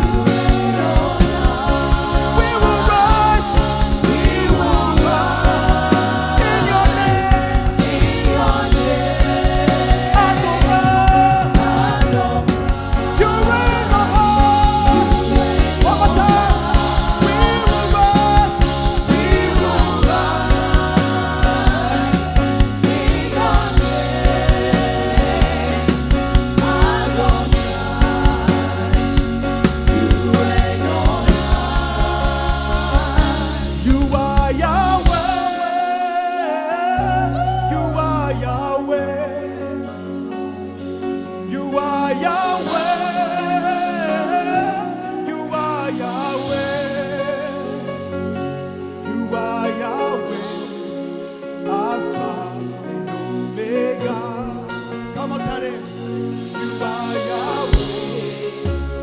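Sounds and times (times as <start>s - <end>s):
drums beating: 0.0s - 35.6s, 56.6s - 59.0s
keyboard bass: 0.0s - 35.8s, 36.8s - 59.0s
band playing: 0.0s - 59.0s
gospel singing: 0.0s - 59.0s.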